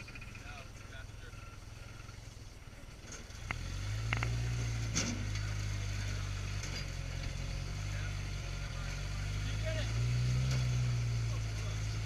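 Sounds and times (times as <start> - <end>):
off-road buggy engine under load: 0.0 - 12.0.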